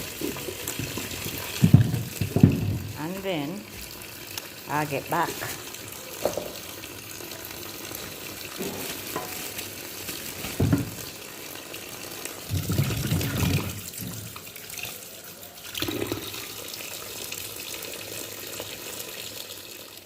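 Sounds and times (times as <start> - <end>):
tap water running into sink: 0.0 - 20.0
handling knocks and thuds: 1.6 - 2.9, 10.5 - 11.0.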